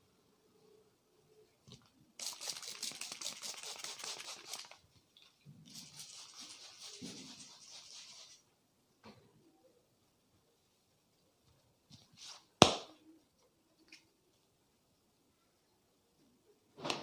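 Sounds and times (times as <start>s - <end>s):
hands rubbing and patting hair: 2.2s - 4.8s, 5.7s - 8.4s.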